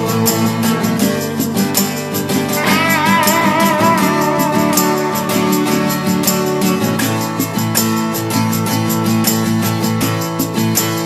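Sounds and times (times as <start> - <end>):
blues-rock band playing: 2.4 - 7.4
held vibrato note: 2.5 - 7.0.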